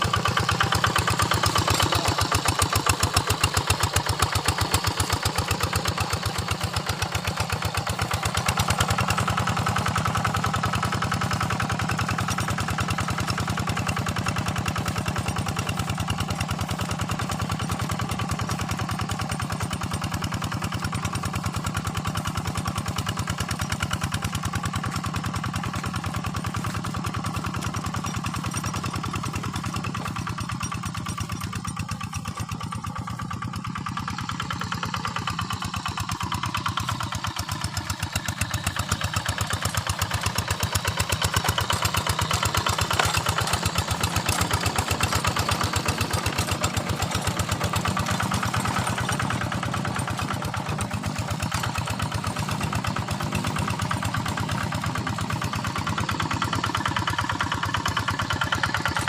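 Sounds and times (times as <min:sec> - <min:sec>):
hand tractor engine under load: 0:00.0 - 0:59.0.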